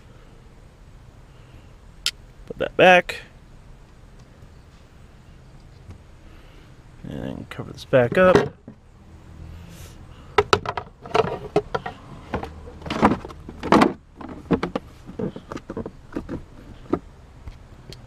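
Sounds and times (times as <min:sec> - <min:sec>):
cover clicks knocks and scrapes: 0:10.4 - 0:17.6.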